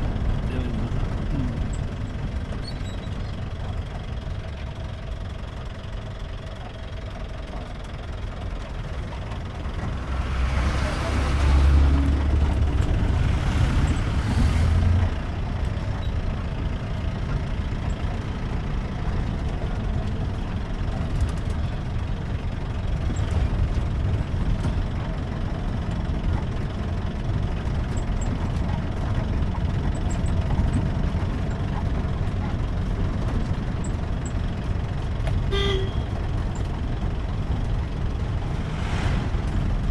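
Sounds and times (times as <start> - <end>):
road noise: 0.0 - 39.9
vehicle engine rumble: 0.0 - 39.9.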